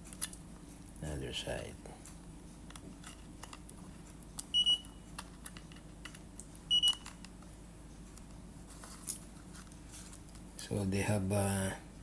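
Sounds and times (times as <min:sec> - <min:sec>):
battery checker beeping: 0:04.5 - 0:05.1, 0:06.7 - 0:07.1.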